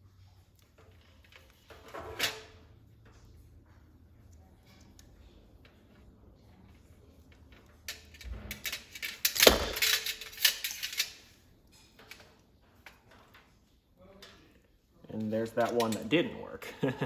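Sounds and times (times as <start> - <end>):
metal parts clicking and rattling: 0.5 - 3.2, 6.6 - 13.6, 15.2 - 16.2.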